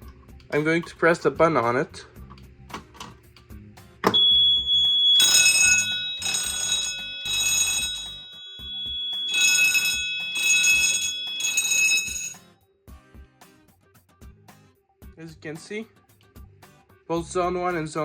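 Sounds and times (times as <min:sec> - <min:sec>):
fire alarm horn blasts: 0:04.1 - 0:12.4
steady high tone: 0:04.1 - 0:12.4.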